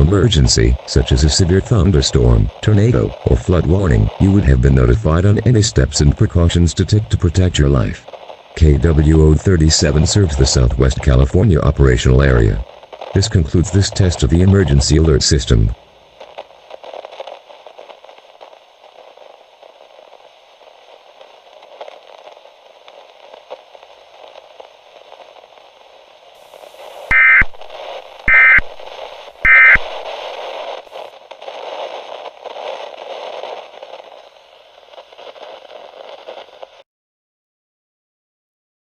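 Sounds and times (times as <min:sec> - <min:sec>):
radio static hiss: 0:00.0 - 0:36.8
emergency alert data tones: 0:27.1 - 0:27.7, 0:28.3 - 0:28.9, 0:29.5 - 0:30.1.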